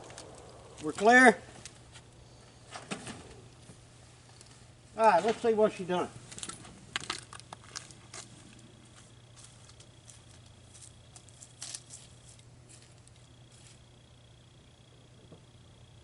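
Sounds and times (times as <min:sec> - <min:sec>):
low steady hum: 0:00.0 - 0:16.0
handling clicks and rustles: 0:06.2 - 0:13.3.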